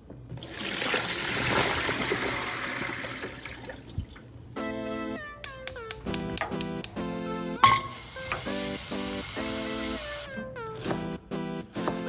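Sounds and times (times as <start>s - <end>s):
music: 4.6s - 12.0s
loud rushing hiss: 7.9s - 10.3s.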